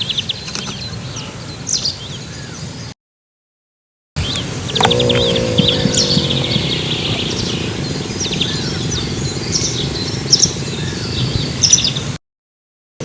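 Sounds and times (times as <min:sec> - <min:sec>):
small birds chirping: 0:04.2 - 0:12.2
foal snoring: 0:04.7 - 0:08.7.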